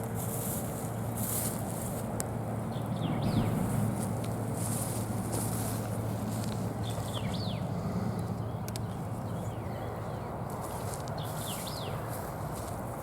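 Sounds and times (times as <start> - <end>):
steady rustling noise: 0.0 - 8.2, 10.4 - 13.0
low hum: 0.0 - 13.0
small birds chirping: 2.6 - 12.9.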